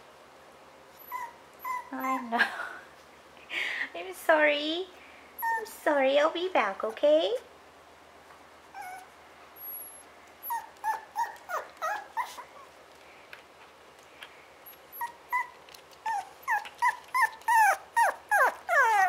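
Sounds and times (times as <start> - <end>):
puppies whining and whimpering: 1.0 - 2.4, 5.4 - 5.7, 8.7 - 12.8, 14.6 - 19.0.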